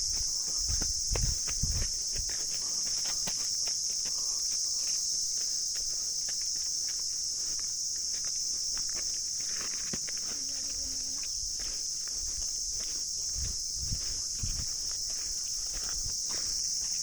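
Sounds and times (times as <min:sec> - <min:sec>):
footsteps crunching on dry ground: 0:00.0 - 0:17.0
insects droning: 0:00.0 - 0:17.0.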